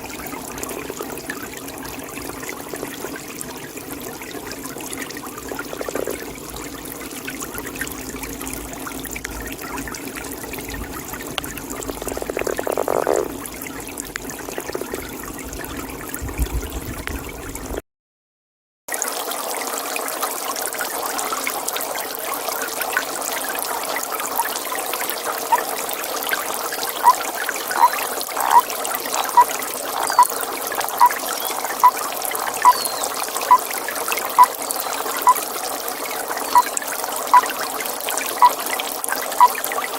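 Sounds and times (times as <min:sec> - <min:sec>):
pond ambience: 0:00.0 - 0:16.4, 0:18.9 - 0:39.9
water trickling: 0:00.0 - 0:17.8, 0:19.0 - 0:39.9
toad calling: 0:05.8 - 0:06.2, 0:11.3 - 0:13.4, 0:26.3 - 0:33.7, 0:34.3 - 0:35.4, 0:36.4 - 0:37.6, 0:38.4 - 0:38.6, 0:39.4 - 0:39.6.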